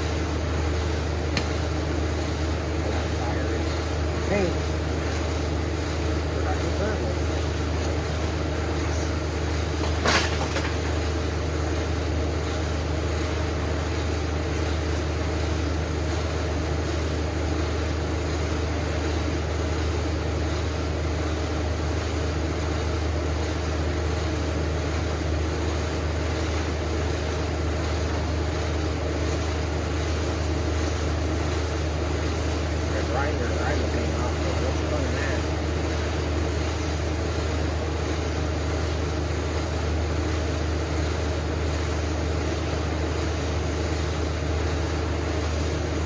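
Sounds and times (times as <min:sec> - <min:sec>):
gas torch flame roaring: 0:00.0 - 0:46.0
sharp click: 0:01.3 - 0:01.6.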